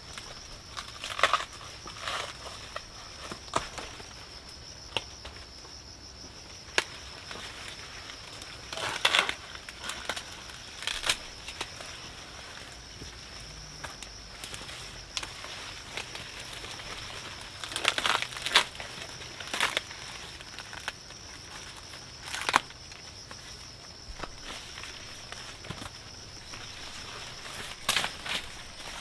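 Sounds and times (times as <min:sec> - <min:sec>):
dry leaves rustling and crackling: 0:06.9 - 0:12.9, 0:14.3 - 0:29.0.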